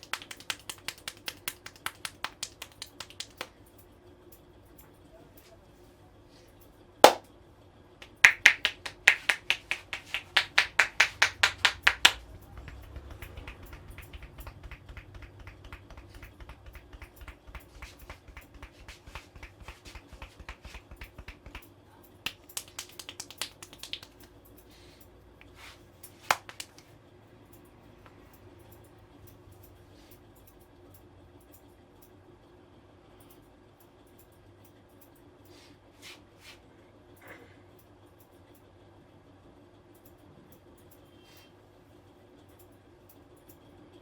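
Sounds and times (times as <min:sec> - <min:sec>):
hand tapping on head: 0:00.0 - 0:03.5, 0:07.0 - 0:07.2, 0:08.0 - 0:21.7, 0:22.3 - 0:24.2, 0:26.3 - 0:26.8
sharp snaps: 0:00.0 - 0:03.5, 0:07.0 - 0:07.3, 0:08.0 - 0:24.4, 0:26.2 - 0:26.9.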